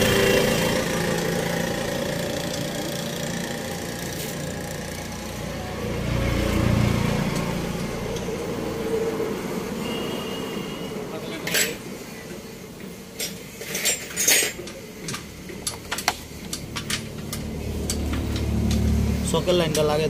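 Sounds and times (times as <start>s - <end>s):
vehicle engine rumbling: 15.3s - 20.0s.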